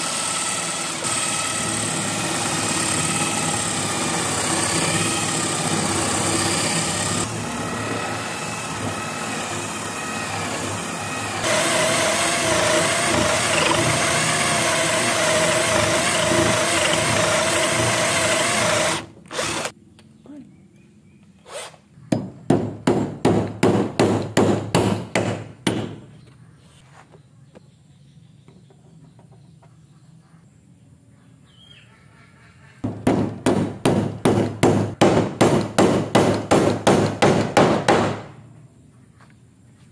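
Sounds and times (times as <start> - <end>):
power tool humming: 0.0 - 19.7.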